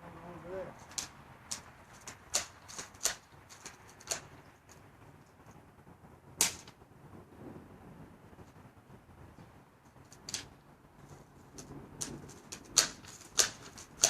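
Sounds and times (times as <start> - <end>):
bb gun clicks and snaps: 0.9 - 4.3.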